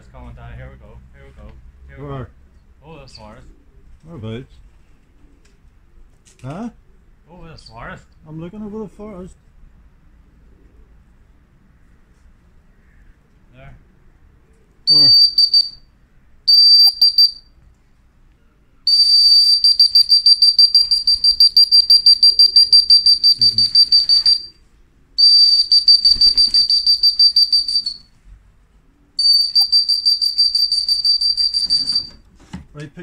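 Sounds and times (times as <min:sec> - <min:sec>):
trilling whistle blasts: 0:14.9 - 0:15.8, 0:16.5 - 0:17.5, 0:18.9 - 0:24.6, 0:25.2 - 0:28.1, 0:29.2 - 0:32.2.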